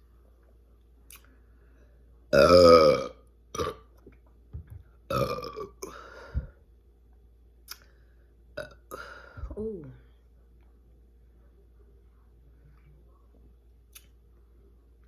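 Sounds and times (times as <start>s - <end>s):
woman burping loudly: 2.3s - 3.8s, 5.1s - 6.0s.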